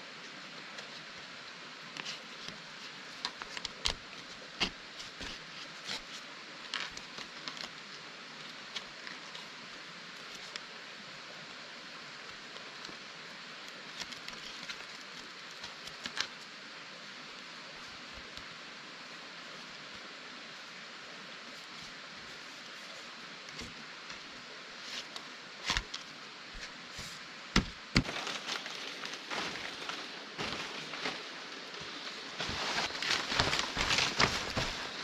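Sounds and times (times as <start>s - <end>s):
steady hiss: 0.0s - 35.0s
rustling: 24.8s - 35.0s.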